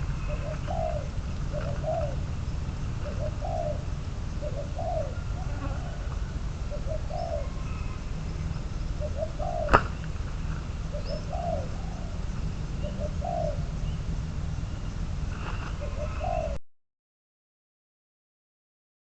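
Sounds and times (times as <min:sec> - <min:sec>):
dove cooing: 0:00.0 - 0:14.0, 0:15.4 - 0:16.6.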